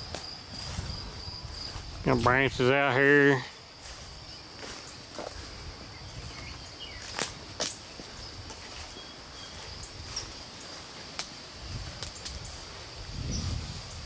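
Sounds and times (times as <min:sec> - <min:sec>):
high insect drone: 0:00.0 - 0:14.0
footsteps through debris: 0:03.4 - 0:13.6
bird chirps: 0:05.9 - 0:08.0
branches snapping underfoot: 0:07.0 - 0:07.9, 0:11.1 - 0:12.6.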